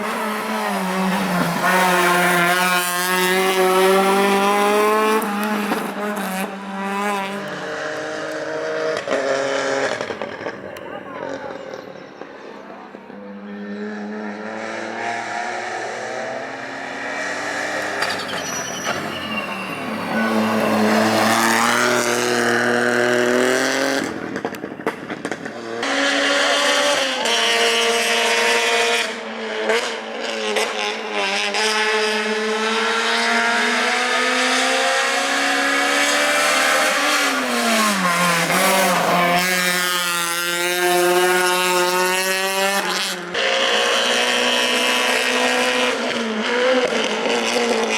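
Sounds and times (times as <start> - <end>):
rally car engines at full throttle: 0.0 - 47.9.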